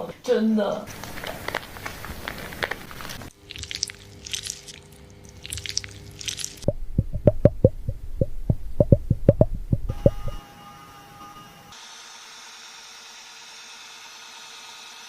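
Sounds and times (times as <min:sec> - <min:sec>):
fingertips scrubbing lathered scalp: 0:01.4 - 0:06.7.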